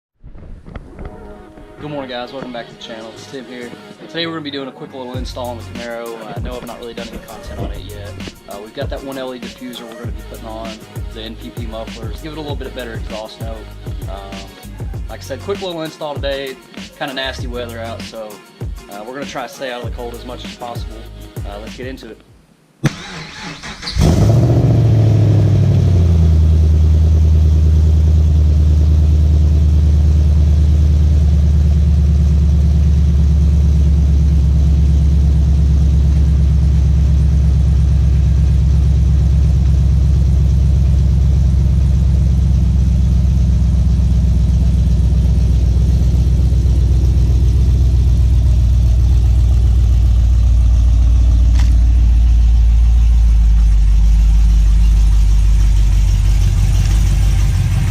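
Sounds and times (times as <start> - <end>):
car engine idling: 6.4 - 8.8, 22.9 - 57.9.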